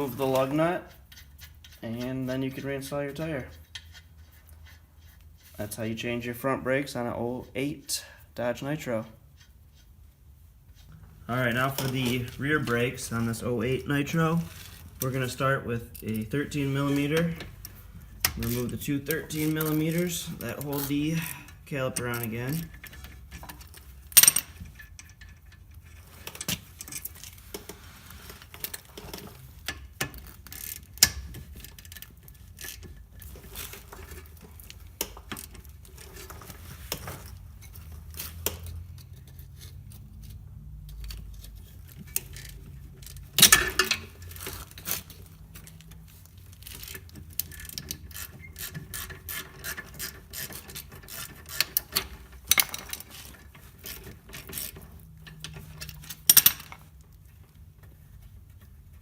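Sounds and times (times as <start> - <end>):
hand ratchet clicking: 0.2 - 5.6, 14.1 - 27.7, 28.6 - 36.3, 36.9 - 56.8.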